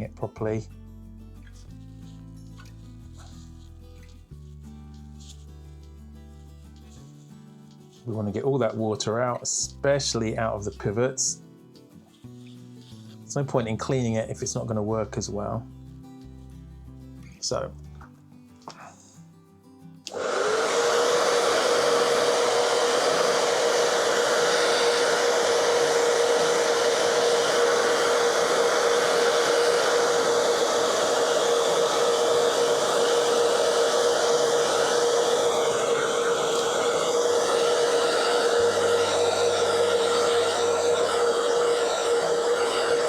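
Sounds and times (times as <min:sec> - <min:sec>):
hair dryer running: 0:20.1 - 0:43.0.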